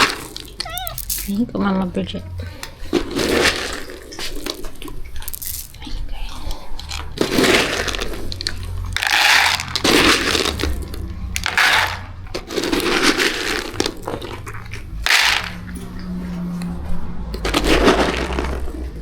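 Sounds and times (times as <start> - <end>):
dry kibble poured into bowls: 0.0 - 1.4, 2.9 - 5.9, 7.2 - 14.4, 15.0 - 15.7, 17.4 - 18.9.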